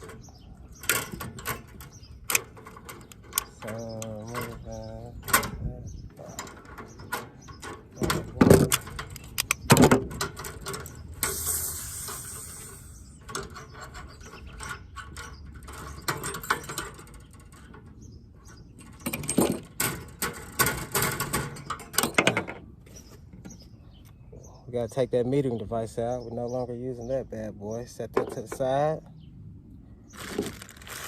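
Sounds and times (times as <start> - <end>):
tools clanking on metal: 0.0 - 11.5, 12.1 - 23.6
short hiss: 11.2 - 13.1.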